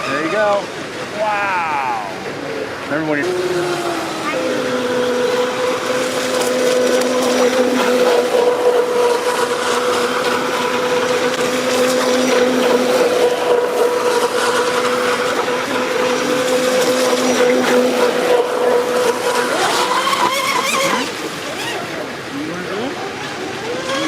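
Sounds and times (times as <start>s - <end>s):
electric motor whining: 2.9s - 22.1s.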